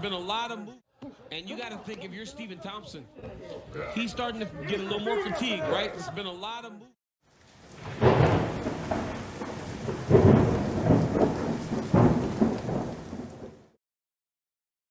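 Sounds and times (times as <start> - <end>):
steady rain: 7.3 - 13.8
rumbling thunder: 7.4 - 13.8.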